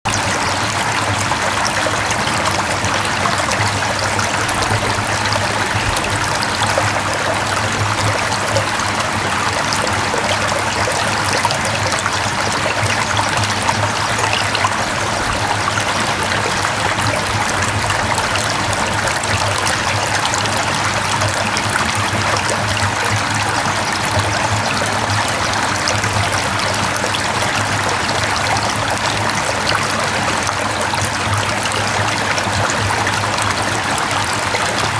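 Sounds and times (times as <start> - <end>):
stream flowing over rocks: 0.1 - 34.9.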